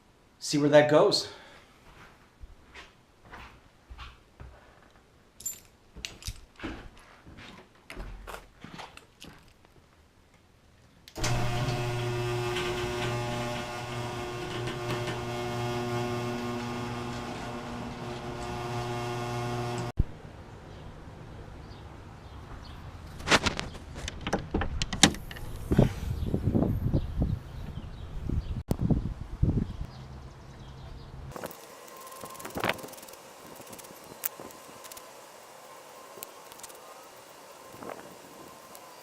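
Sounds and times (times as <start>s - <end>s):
steady mechanical hum: 11.2s - 19.9s.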